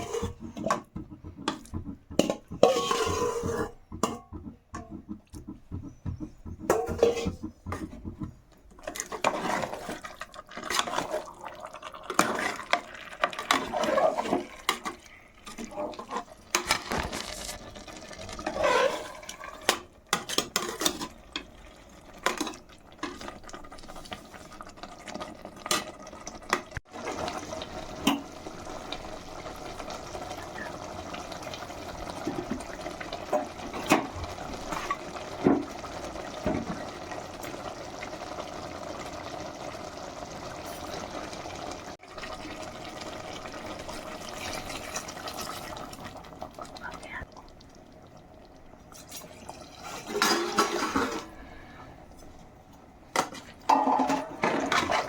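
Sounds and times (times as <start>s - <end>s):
running water or bubbling: 0.0s - 19.8s, 21.0s - 51.8s
liquid sloshing in a pot: 0.0s - 38.4s, 48.7s - 55.0s.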